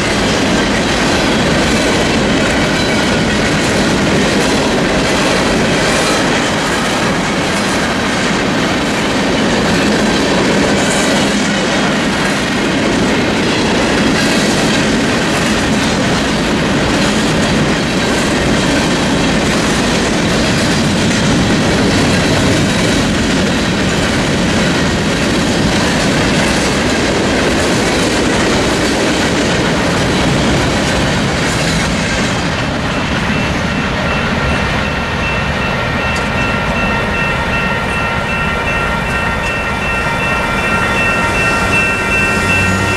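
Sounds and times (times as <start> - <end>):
train wheels clacking on rails: 0.0 - 42.9
high-pitched tones: 33.3 - 42.9.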